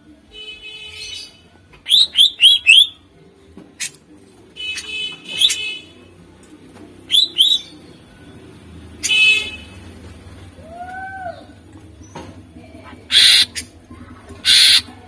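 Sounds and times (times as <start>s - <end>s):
bird singing harsh buzzy phrases: 0.8s - 3.0s, 7.1s - 8.1s, 13.1s - 13.8s, 14.4s - 14.9s
bird whistled notes: 1.9s - 3.0s, 7.1s - 7.8s, 13.1s - 13.6s, 14.5s - 14.9s.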